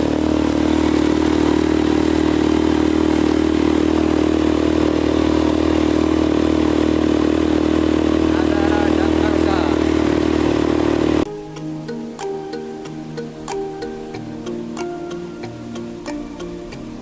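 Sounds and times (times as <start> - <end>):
atv engine running: 0.0 - 11.3.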